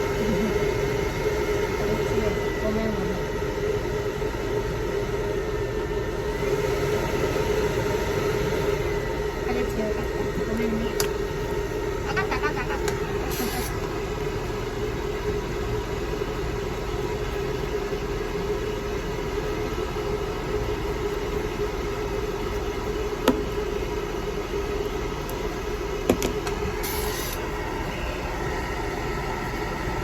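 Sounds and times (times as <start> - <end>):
hair dryer blowing: 6.0 - 14.0, 26.1 - 30.0.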